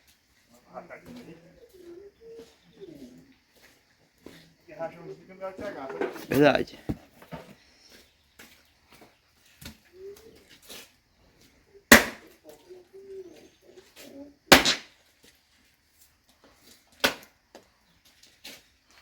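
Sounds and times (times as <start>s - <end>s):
axe chopping firewood: 11.9s - 12.4s, 14.5s - 14.9s, 17.0s - 17.3s.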